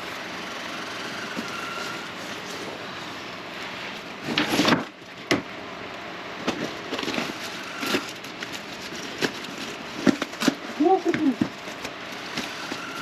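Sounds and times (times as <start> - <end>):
cardboard box tearing and rustling: 4.2 - 5.0, 6.5 - 13.0.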